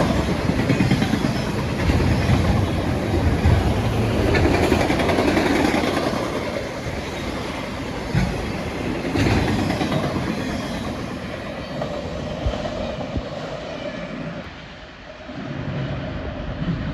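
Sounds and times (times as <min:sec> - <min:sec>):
freight train wheels clattering: 0:00.0 - 0:13.1.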